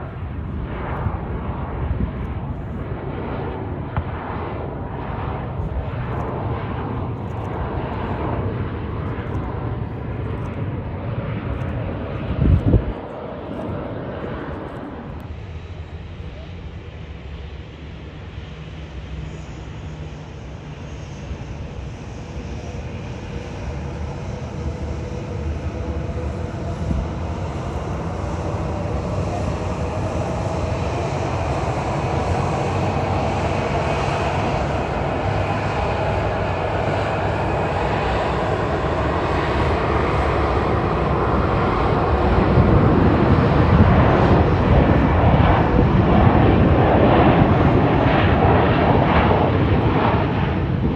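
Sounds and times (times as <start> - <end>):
wind rumbling on microphone: 0.0 - 15.3, 22.0 - 50.9
jet airliner engines: 0.0 - 50.9.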